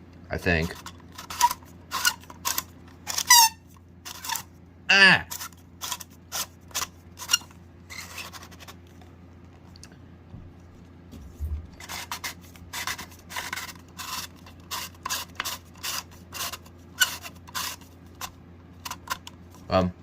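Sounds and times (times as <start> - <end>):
plastic housing scratching rubs: 0.6 - 4.5, 5.3 - 8.8, 11.3 - 19.6.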